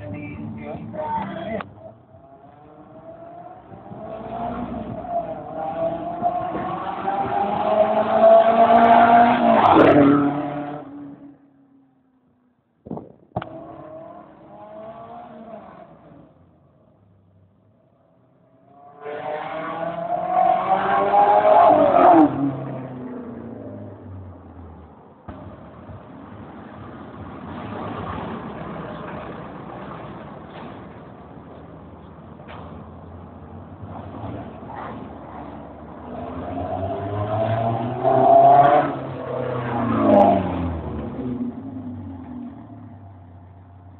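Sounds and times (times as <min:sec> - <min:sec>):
car engine revving: 0:00.0 - 0:11.4.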